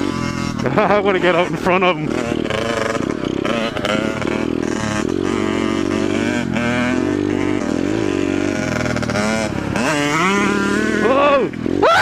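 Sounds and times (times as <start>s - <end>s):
dirt bike engine running: 0.0s - 12.0s.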